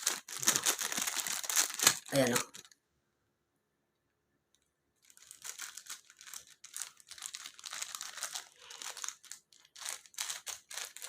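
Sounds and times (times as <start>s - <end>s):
plastic packaging crinkling: 0.0s - 2.8s, 5.0s - 11.0s.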